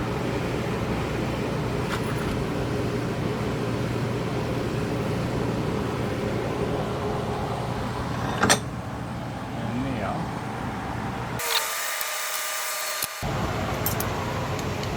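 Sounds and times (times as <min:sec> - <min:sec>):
motor drone: 0:11.4 - 0:14.9.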